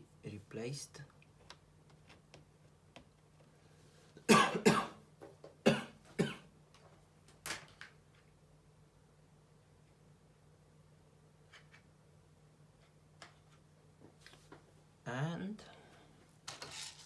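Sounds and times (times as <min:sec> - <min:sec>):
person coughing: 0:04.3 - 0:05.0, 0:05.7 - 0:06.5.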